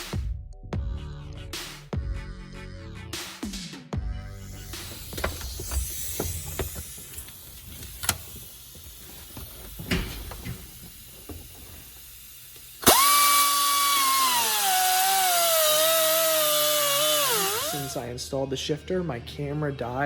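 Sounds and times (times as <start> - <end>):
power tool whining: 4.3 - 18.1
tools knocking and clicking: 4.8 - 8.4, 9.4 - 11.4.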